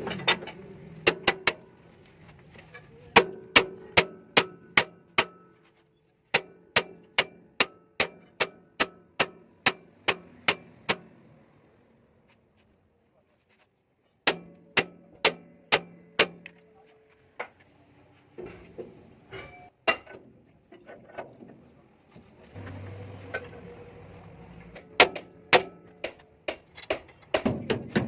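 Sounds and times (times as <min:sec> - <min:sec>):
hammer striking metal: 0:14.2 - 0:16.5, 0:24.8 - 0:28.0.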